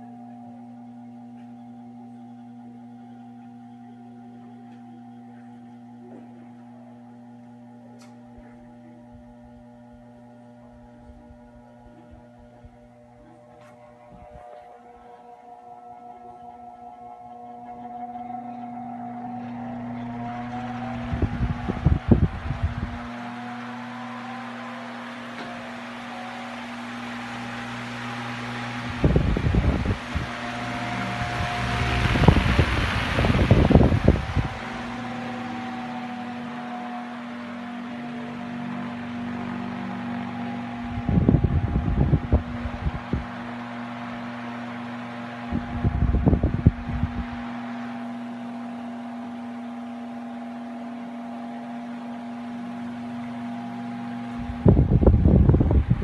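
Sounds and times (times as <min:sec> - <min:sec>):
fan motor hum: 0:00.0 - 0:56.0
wind buffeting microphone: 0:20.6 - 0:23.3, 0:28.8 - 0:36.7, 0:40.1 - 0:43.6, 0:45.5 - 0:47.6, 0:54.3 - 0:56.0
rush of air: 0:28.9 - 0:35.8.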